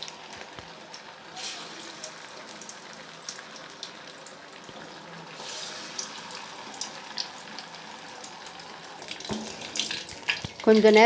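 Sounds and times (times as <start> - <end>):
food deep-frying in oil: 0.0 - 11.0.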